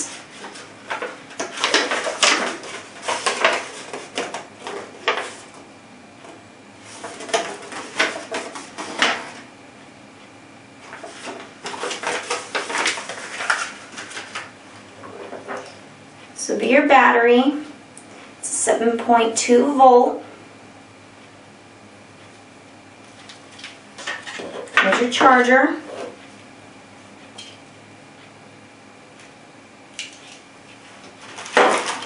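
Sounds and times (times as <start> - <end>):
packaging rustling: 0.1 - 5.5, 10.8 - 14.5, 31.2 - 32.0.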